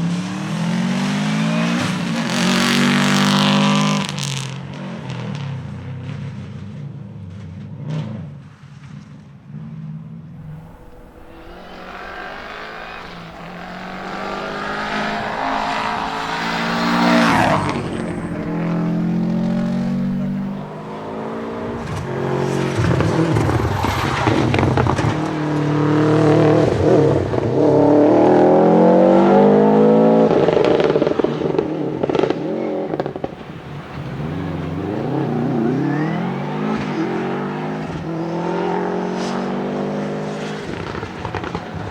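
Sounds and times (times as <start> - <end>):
rally car engine revving through gears: 10.4 - 41.9.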